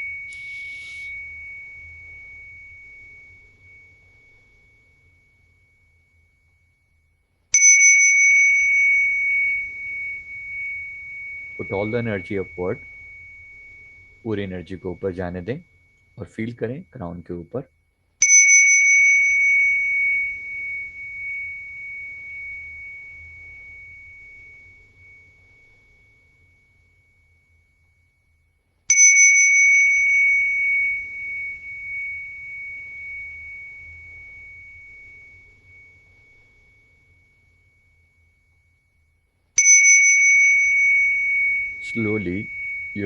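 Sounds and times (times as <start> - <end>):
bell ringing: 0.0 - 4.0, 7.6 - 16.7, 28.9 - 36.2, 39.6 - 43.0.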